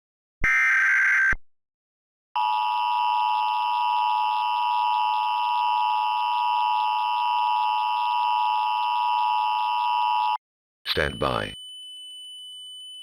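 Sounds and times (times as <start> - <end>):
electronic two-tone alarm tone: 2.4 - 11.7.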